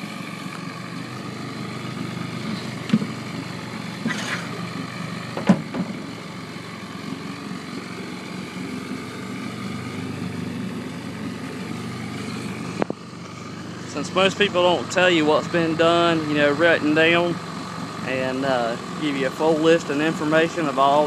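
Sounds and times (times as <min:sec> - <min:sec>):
engine idling: 0:00.0 - 0:21.0
sharp knocks: 0:05.4 - 0:06.0.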